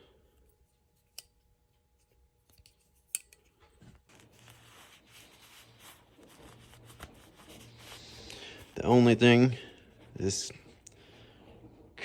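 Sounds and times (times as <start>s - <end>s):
soft rubbing and shuffling: 3.5s - 12.0s.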